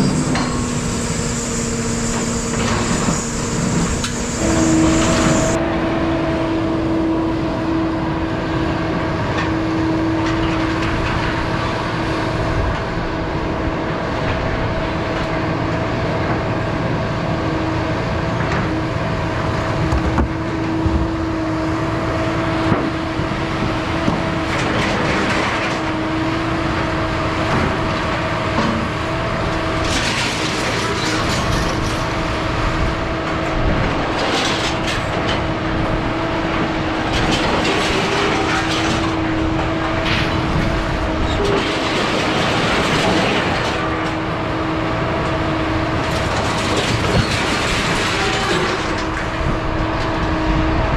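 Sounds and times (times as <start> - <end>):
droning hum: 0.0 - 10.9
vehicle road noise: 0.0 - 50.9.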